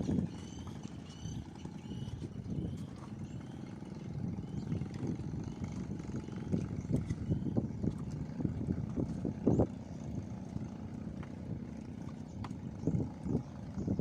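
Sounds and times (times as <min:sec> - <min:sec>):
strong wind buffeting microphone: 0:04.1 - 0:11.7, 0:12.6 - 0:14.0.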